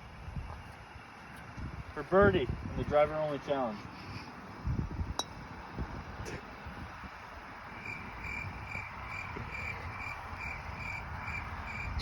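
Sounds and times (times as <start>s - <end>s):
low wind rumble on microphone: 0.0s - 12.0s.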